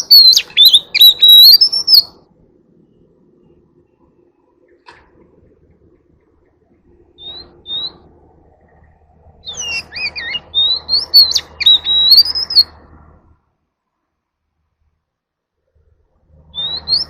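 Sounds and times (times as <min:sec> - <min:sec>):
bird singing whistled phrases: 0:00.0 - 0:02.2, 0:07.2 - 0:08.1, 0:09.4 - 0:12.8, 0:16.5 - 0:17.0.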